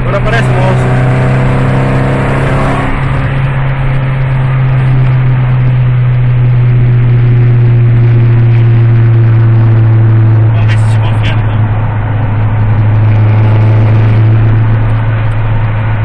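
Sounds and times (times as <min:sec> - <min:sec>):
car engine and exhaust droning: 0:00.0 - 0:16.0.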